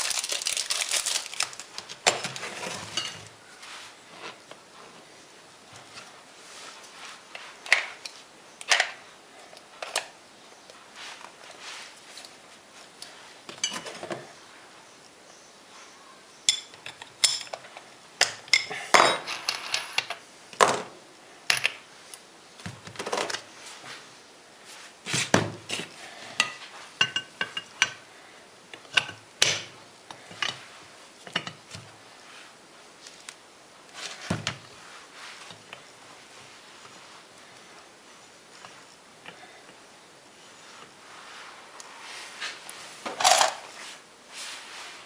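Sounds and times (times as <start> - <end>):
metal parts clinking and rattling: 43.2 - 43.6.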